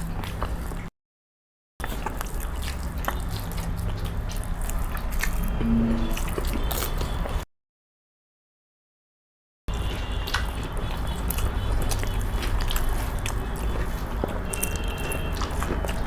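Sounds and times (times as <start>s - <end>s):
wet chewing: 0.0s - 0.9s, 1.8s - 7.4s, 9.7s - 16.0s.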